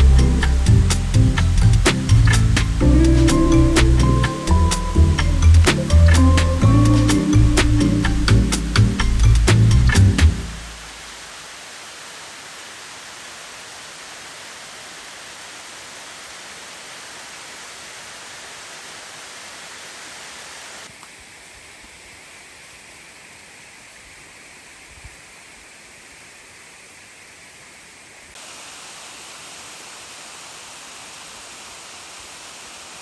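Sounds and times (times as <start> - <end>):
waterfall roar: 0.0 - 21.0, 28.4 - 33.0.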